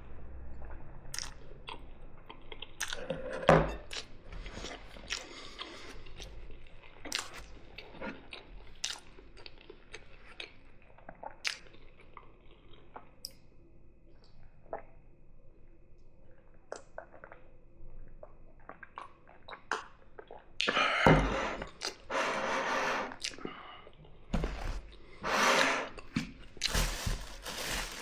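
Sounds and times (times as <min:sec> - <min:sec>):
wet chewing mouth sounds: 0:01.1 - 0:03.2, 0:03.9 - 0:13.2, 0:18.2 - 0:20.8, 0:21.6 - 0:22.1, 0:23.1 - 0:24.1.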